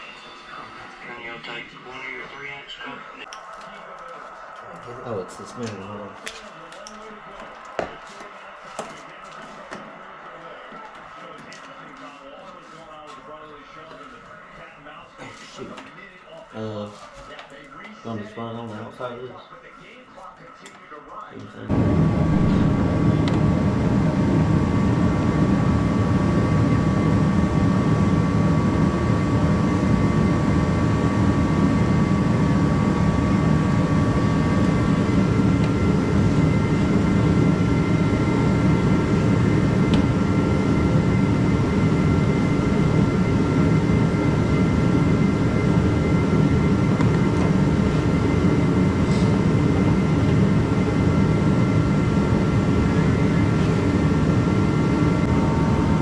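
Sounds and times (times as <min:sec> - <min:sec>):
faint whining tones: 0:21.7 - 0:56.0
steady mechanical drone: 0:21.7 - 0:56.0.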